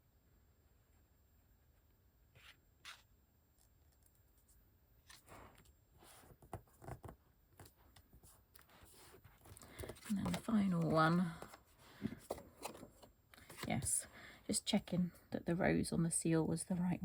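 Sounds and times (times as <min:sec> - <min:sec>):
paper and card rustling: 0:02.4 - 0:14.1.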